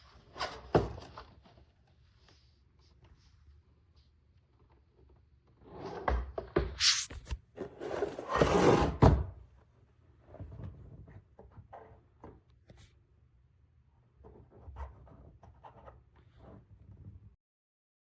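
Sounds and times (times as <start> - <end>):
rustling and scraping: 6.8 - 8.6.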